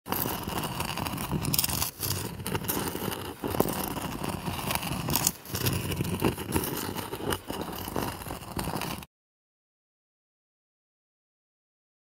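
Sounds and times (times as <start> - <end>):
rock scraping across stone: 0.0 - 9.1.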